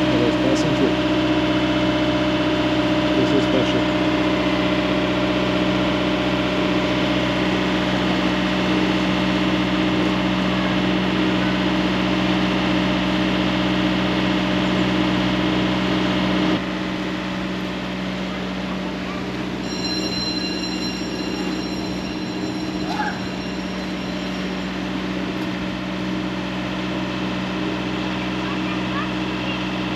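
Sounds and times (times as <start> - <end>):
boat engine running: 0.0 - 29.9
high thin steady tones: 19.6 - 25.7.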